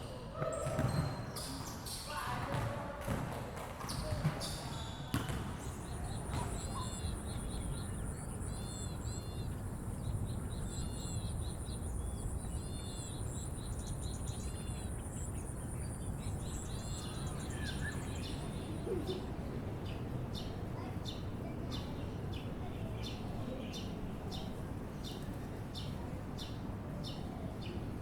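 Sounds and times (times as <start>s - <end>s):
bird chirping: 5.8s - 19.2s.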